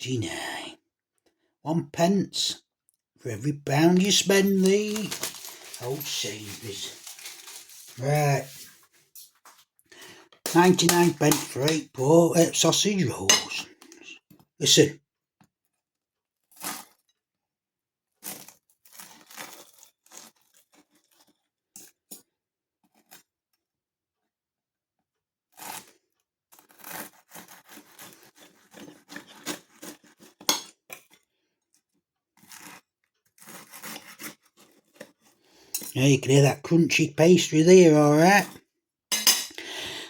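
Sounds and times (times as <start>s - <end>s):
pastry crunching under knife and fork: 3.7s - 9.5s, 10.5s - 14.0s, 26.6s - 31.2s, 33.4s - 35.3s.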